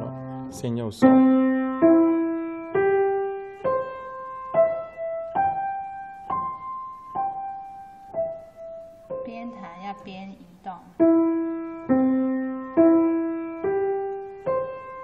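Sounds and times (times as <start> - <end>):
piano arpeggio: 0.0 - 15.0.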